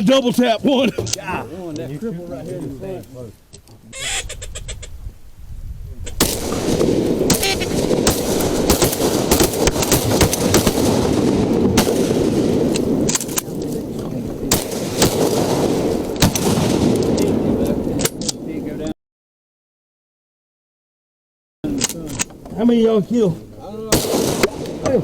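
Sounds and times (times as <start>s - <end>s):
shotgun blasts: 6.1s - 18.5s, 23.9s - 25.0s.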